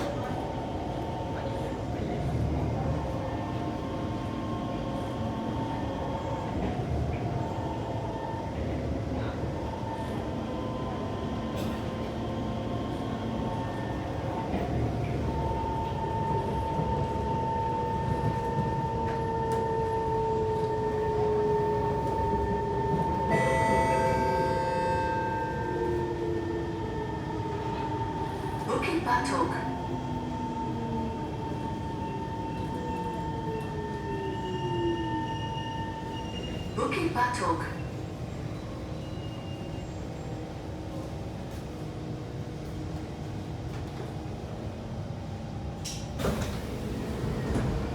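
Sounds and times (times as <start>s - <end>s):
train wheels rumbling on track: 35.9s - 47.9s.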